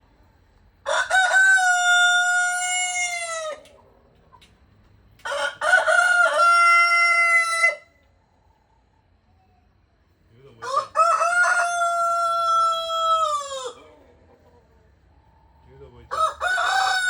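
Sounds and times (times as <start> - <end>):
rooster crowing: 0.8 - 3.7, 5.2 - 7.9, 10.6 - 13.9, 16.0 - 17.0.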